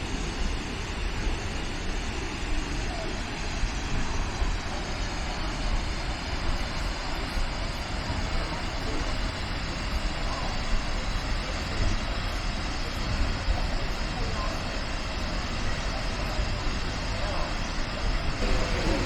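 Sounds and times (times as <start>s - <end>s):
large waterfall roaring: 4.3s - 19.0s.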